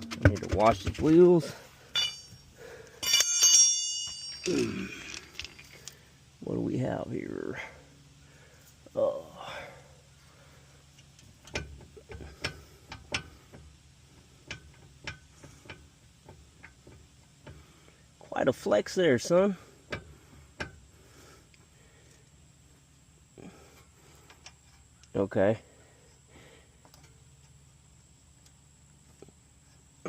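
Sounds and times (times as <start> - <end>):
metallic clicks and knocks: 11.0 - 13.7, 14.4 - 17.6.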